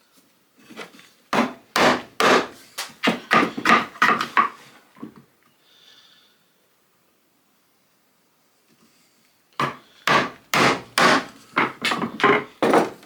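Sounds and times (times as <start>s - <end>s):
wooden pieces knocking: 1.4s - 5.2s, 9.6s - 13.0s.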